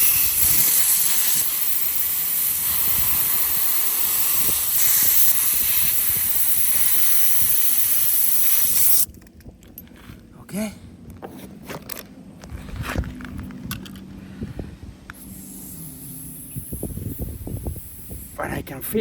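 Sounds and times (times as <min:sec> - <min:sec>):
compressed air hissing: 0:00.0 - 0:09.1, 0:14.4 - 0:18.4.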